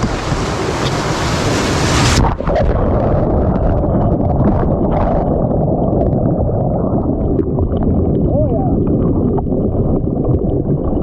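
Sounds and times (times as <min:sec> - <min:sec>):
whitewater rushing and splashing: 0:00.0 - 0:02.7
muffled underwater churning rumble: 0:00.0 - 0:11.0.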